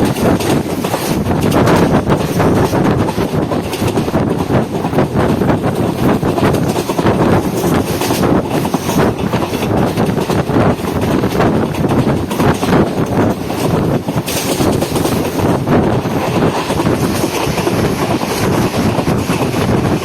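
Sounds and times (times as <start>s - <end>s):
train rumbling and rattling: 0.0s - 20.0s
wind buffeting microphone: 0.0s - 20.0s.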